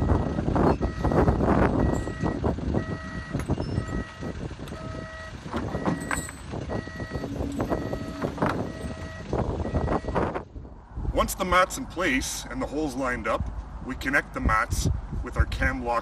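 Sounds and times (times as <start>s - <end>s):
backup alarm beeping: 0.0s - 10.3s
diesel engine running: 0.0s - 10.8s.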